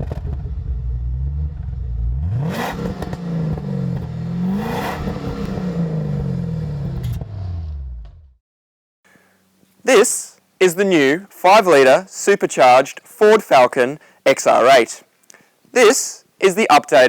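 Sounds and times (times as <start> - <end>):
car engine revving hard: 0.0 - 8.1.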